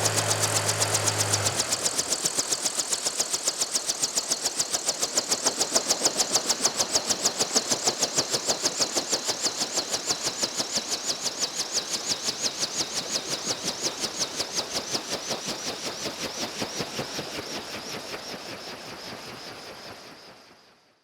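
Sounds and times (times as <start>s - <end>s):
helicopter rotor chop: 0.0s - 8.9s.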